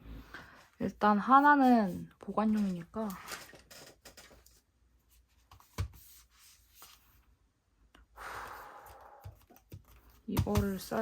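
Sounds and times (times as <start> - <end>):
paper rustling: 1.6 - 7.2.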